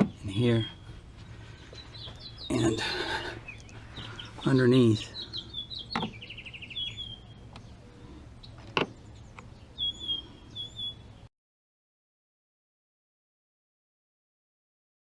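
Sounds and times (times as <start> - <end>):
small birds chirping: 0.0 - 11.3
bird trill: 1.8 - 11.3
whistled bird calls: 5.0 - 7.3, 9.8 - 11.1.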